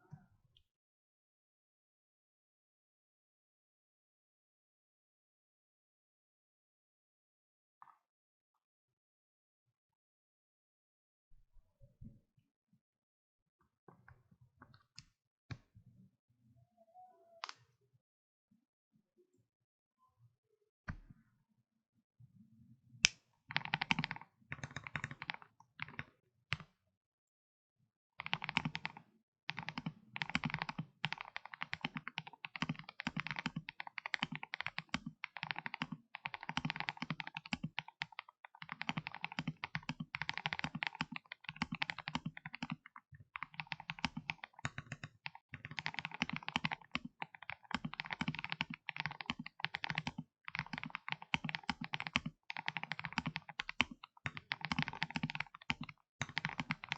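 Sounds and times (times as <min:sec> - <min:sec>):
typing on mechanical keyboard: 0:23.5 - 0:26.0, 0:28.2 - 0:56.9.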